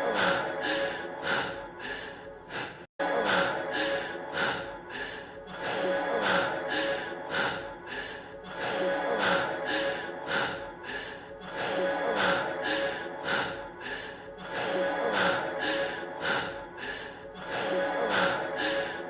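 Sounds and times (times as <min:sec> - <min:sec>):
man panting heavily: 0:00.0 - 0:19.0.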